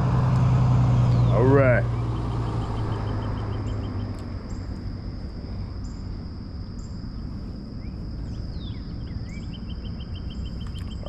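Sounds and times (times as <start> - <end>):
insects buzzing: 0.0 - 11.0
low rumble: 0.0 - 11.0
bird chirps: 1.0 - 4.7, 7.8 - 11.0.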